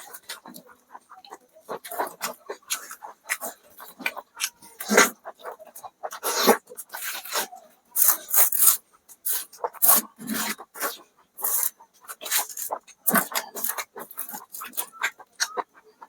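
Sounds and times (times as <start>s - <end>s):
wet chewing and lip-smacking: 0.1s - 15.9s.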